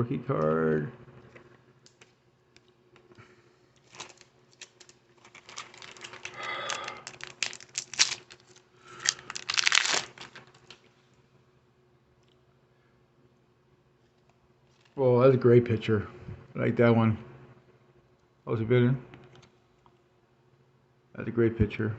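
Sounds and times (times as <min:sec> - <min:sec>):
card pack wrapper crinkling and tearing: 0:03.8 - 0:10.8.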